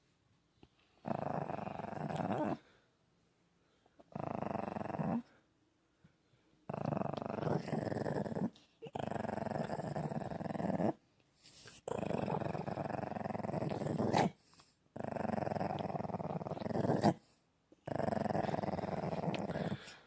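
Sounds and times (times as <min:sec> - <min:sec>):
dog making rumbling throat sounds: 0:11.9 - 0:14.3, 0:15.0 - 0:17.2, 0:17.8 - 0:20.0.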